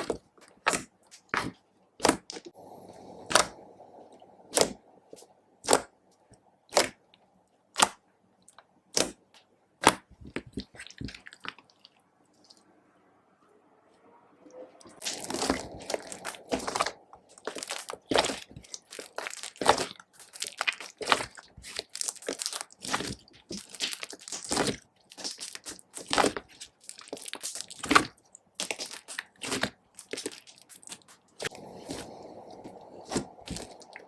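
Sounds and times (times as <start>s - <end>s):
slime squeezed crackling pops: 4.5s - 5.9s, 6.7s - 7.0s, 15.0s - 34.0s.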